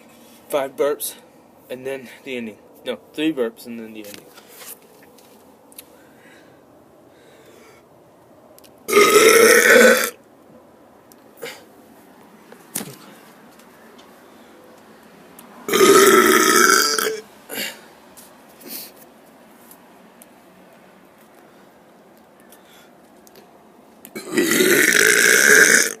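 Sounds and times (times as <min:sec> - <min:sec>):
person burping loudly: 0:08.9 - 0:10.2, 0:15.7 - 0:17.7, 0:24.2 - 0:26.0.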